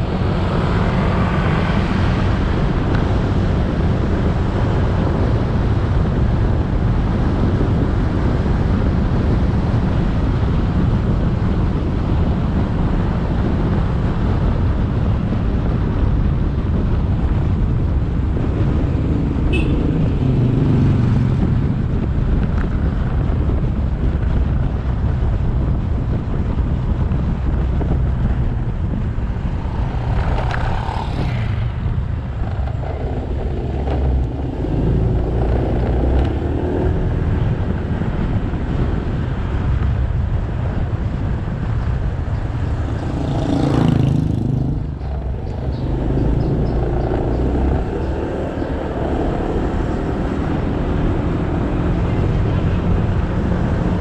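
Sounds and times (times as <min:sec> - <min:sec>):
road and wind noise: 0:00.0 - 0:54.0
motorcycle engine running: 0:15.2 - 0:49.6
loud whoosh: 0:27.8 - 0:37.2.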